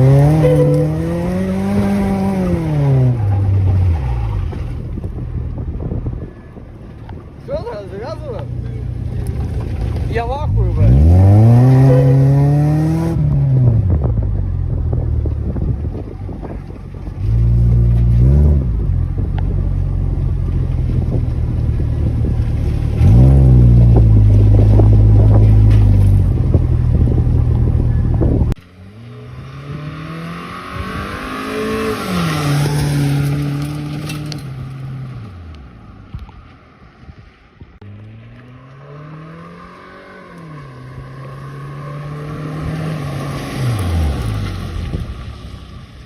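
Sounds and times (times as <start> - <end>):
car engine revving: 0.0 - 5.9, 8.4 - 15.6, 20.2 - 35.5, 37.8 - 45.6.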